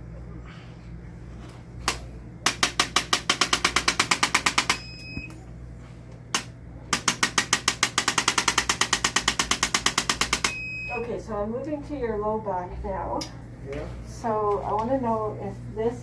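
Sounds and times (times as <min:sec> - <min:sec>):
electric adjusting instrument tapping: 0:06.3 - 0:10.6.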